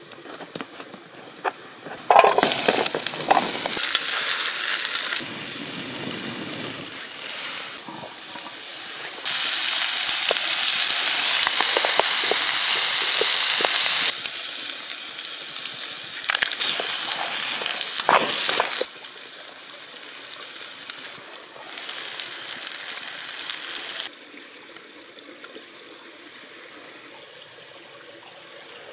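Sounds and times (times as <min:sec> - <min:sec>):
potatoes sizzling in a frying pan: 0:02.1 - 0:24.1.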